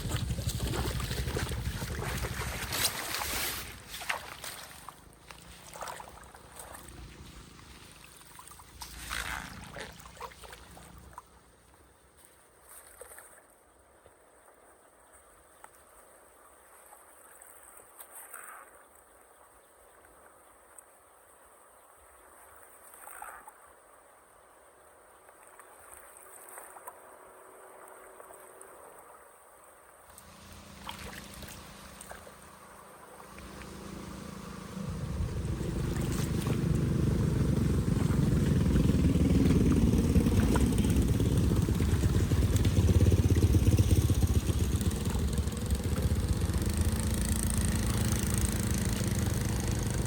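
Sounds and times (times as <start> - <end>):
floodwater sloshing and splashing: 0.0 - 14.0, 25.2 - 50.0
low steady hum: 30.2 - 50.0
low rumble: 33.2 - 47.2.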